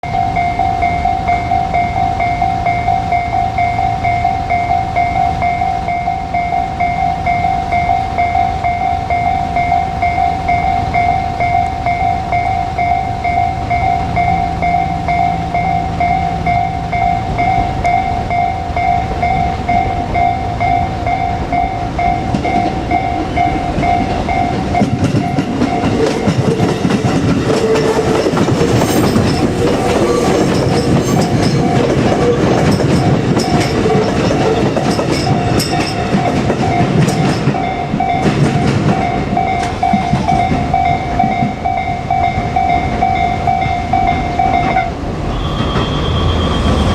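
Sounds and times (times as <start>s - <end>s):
level crossing bell ringing: 0.0s - 44.9s
train wheels clattering over rails: 22.0s - 46.9s.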